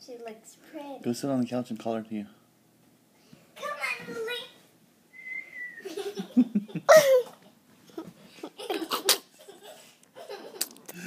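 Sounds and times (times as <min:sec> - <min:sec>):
girls laughing and giggling: 0:05.8 - 0:10.7.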